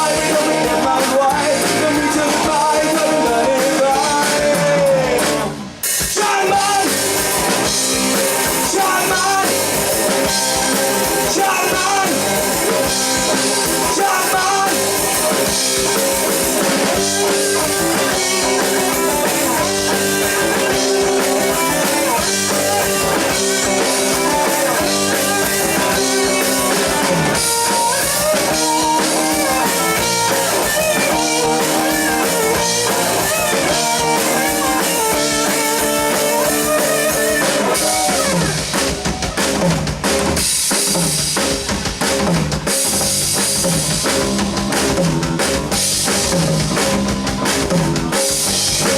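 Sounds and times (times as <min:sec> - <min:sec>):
bass guitar: 0:00.0 - 0:48.9
drum kit: 0:00.0 - 0:48.9
electric guitar lines: 0:06.9 - 0:39.7.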